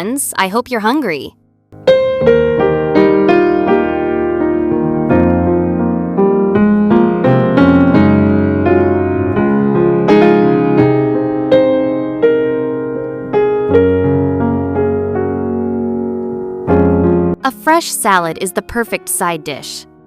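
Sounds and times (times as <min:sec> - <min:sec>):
sustained bass chords: 0:01.4 - 0:11.5
gentle piano melody: 0:01.7 - 0:20.0.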